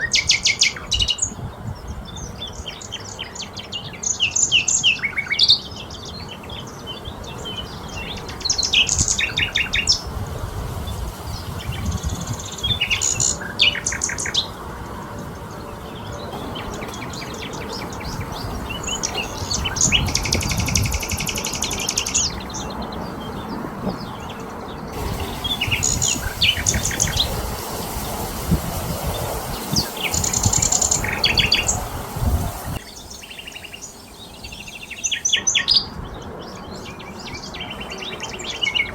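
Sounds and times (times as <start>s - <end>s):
outdoor background hiss: 0.0s - 38.9s
songbirds chirping and singing: 0.0s - 38.9s
bird rattling trill: 16.4s - 22.6s, 25.0s - 35.0s.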